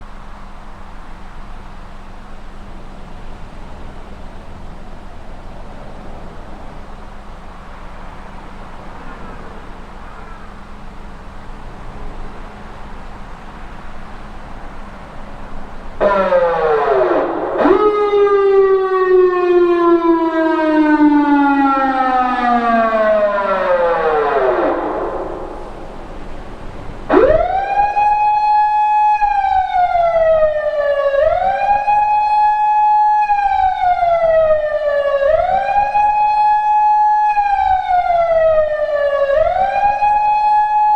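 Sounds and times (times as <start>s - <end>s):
steady hiss with low hum: 0.0s - 16.0s, 24.6s - 27.2s
electronic siren wailing: 16.0s - 40.9s.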